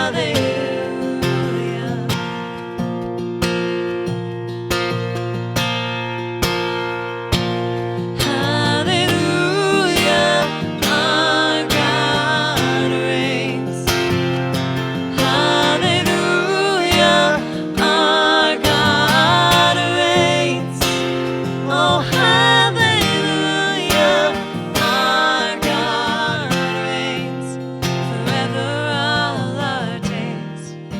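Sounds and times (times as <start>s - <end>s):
acoustic guitar strumming: 0.0s - 30.9s.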